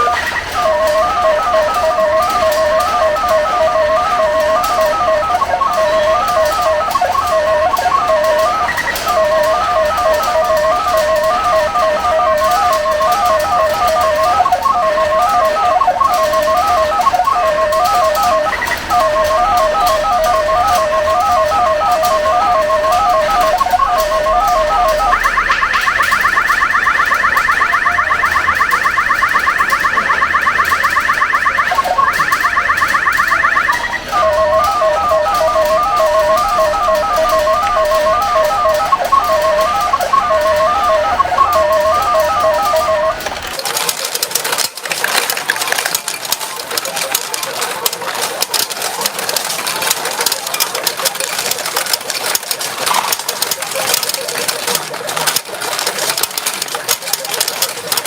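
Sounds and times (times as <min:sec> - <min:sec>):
rapid rising electronic beeps: 0:00.0 - 0:43.2
steel balls rattling through pins: 0:00.0 - 0:58.0.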